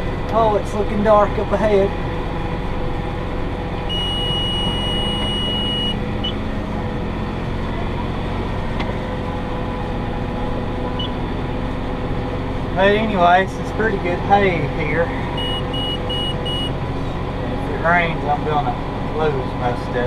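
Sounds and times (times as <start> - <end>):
tractor running under load: 0.0 - 20.0
short electronic chirps: 3.9 - 6.0
high electronic beep: 3.9 - 6.4, 15.4 - 16.7.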